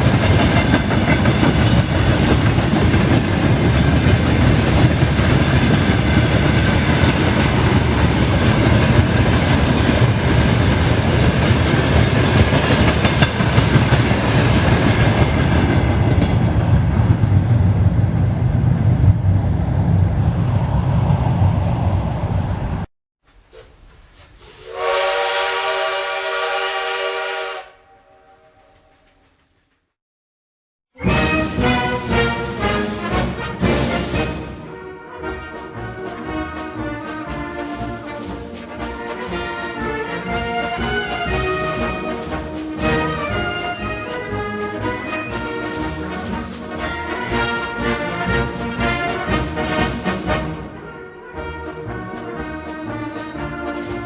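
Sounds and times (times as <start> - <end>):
train wheels clattering over rail joints: 0.0 - 16.6
train horn: 24.6 - 29.2, 31.0 - 54.0.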